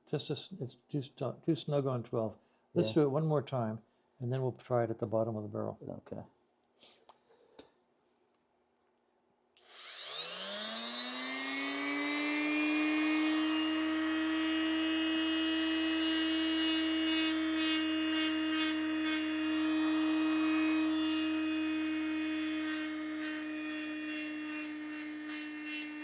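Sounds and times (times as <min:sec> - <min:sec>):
electric grinder whining: 0:09.6 - 0:26.0.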